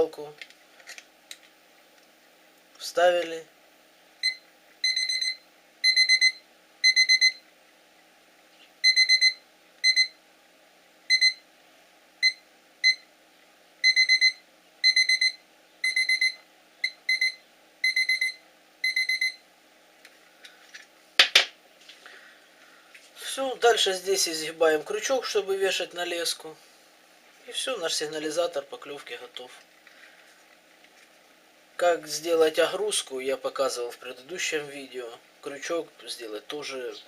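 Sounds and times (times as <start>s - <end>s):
rapid high-pitched buzzer beeps: 4.2s - 7.4s, 8.8s - 10.1s, 13.8s - 19.4s.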